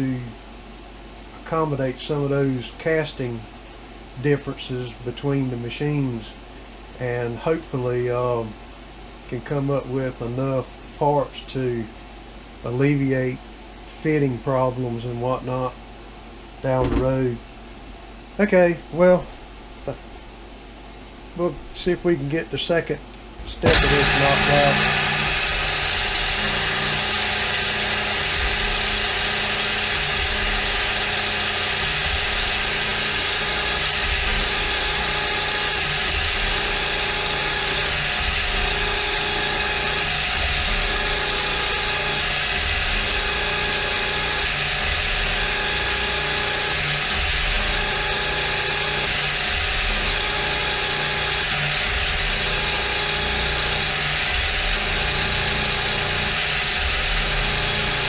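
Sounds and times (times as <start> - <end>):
milling machine gear whir: 23.4 - 58.0.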